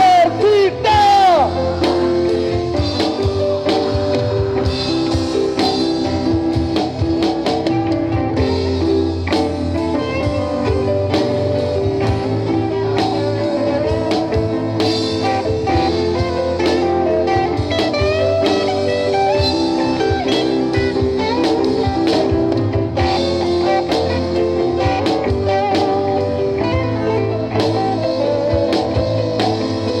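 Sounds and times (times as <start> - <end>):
bass guitar: 0.0 - 30.0
electric guitar lead with bending notes: 0.0 - 30.0
steady drums: 0.0 - 30.0.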